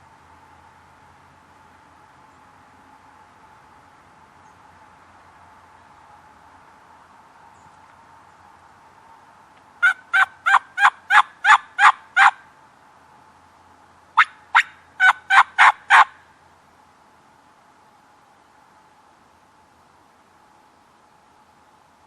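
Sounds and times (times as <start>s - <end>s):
turkey yelping: 9.8s - 12.4s, 14.2s - 16.1s.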